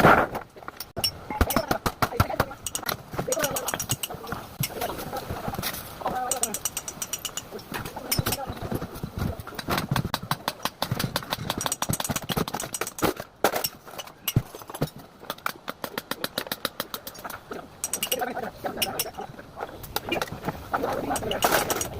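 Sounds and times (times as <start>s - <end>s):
metal knocks and clattering: 0.4s - 4.9s, 6.2s - 19.2s.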